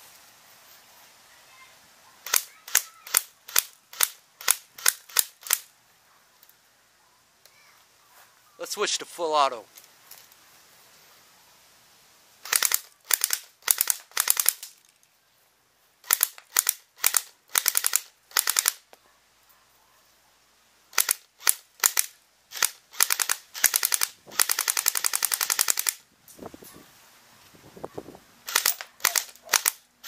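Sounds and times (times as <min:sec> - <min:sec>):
automatic gunfire bursts: 0:12.4 - 0:14.7, 0:16.0 - 0:18.8, 0:21.0 - 0:26.0, 0:28.5 - 0:29.8.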